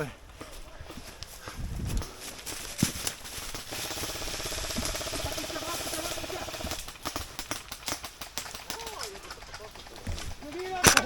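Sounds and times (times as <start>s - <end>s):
airsoft gun full-auto burst: 3.4s - 11.0s.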